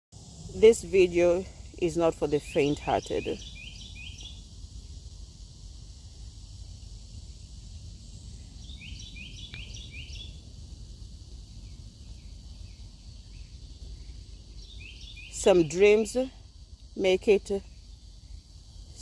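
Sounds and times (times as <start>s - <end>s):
low outdoor rumble: 0.2s - 19.0s
bird chirping: 2.3s - 4.6s, 8.3s - 10.5s, 11.4s - 16.2s.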